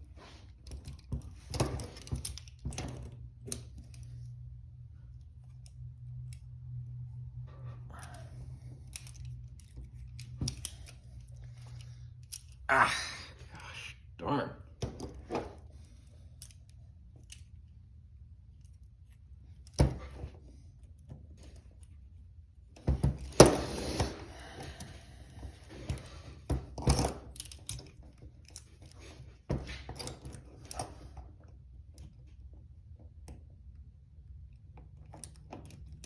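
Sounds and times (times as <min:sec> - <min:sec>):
handcuffs and key clinking: 0:00.6 - 0:04.4, 0:07.7 - 0:12.7, 0:15.8 - 0:17.7, 0:25.6 - 0:31.2.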